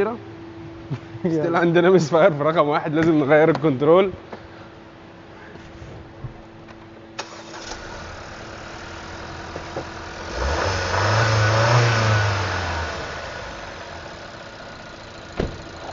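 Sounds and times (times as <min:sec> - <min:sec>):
car engine idling and revving: 0:07.2 - 0:15.9.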